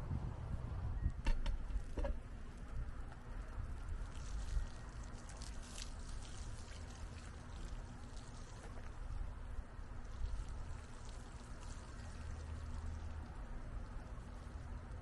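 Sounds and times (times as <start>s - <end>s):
wind rumble on microphone: 0.0s - 15.0s
water splashing on plants: 3.2s - 15.0s.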